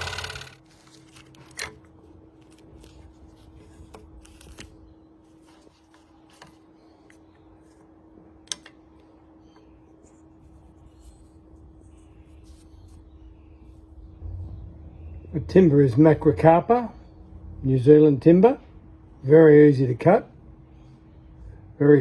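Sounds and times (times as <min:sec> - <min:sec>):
scroll saw motor winding down: 0:00.0 - 0:00.6
faint steady hum: 0:00.0 - 0:22.0.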